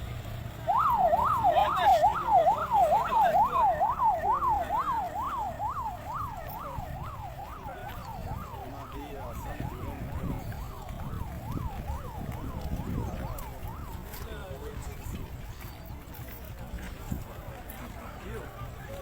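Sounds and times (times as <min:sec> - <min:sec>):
ambulance siren wailing: 0:00.0 - 0:15.5.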